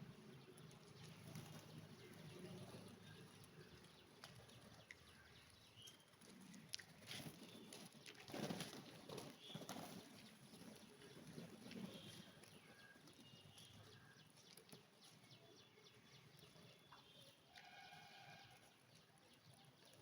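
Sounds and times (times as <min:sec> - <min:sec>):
pigeons fluttering: 0:00.0 - 0:04.9, 0:06.1 - 0:13.7.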